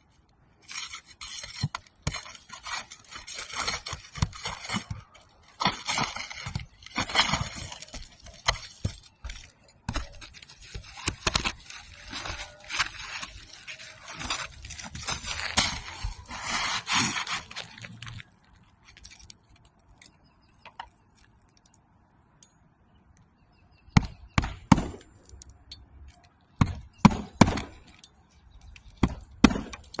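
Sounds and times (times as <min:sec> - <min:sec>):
rustling and scuffing: 0:00.6 - 0:19.3.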